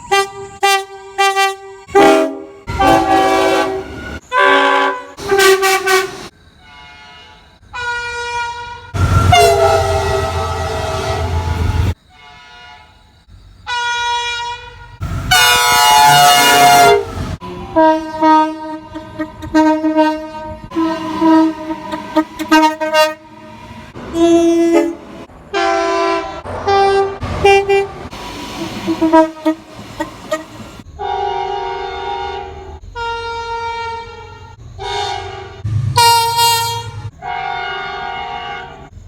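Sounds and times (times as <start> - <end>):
train air horn blasts: 0.0 - 13.0, 13.7 - 38.9
passing train rumble: 0.0 - 39.0.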